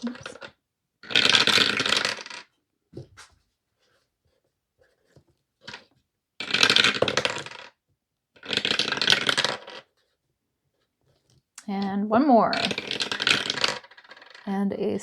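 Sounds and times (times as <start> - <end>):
dice rattling as rolled: 0.0 - 2.5, 6.4 - 7.8, 8.4 - 9.9, 11.6 - 14.5.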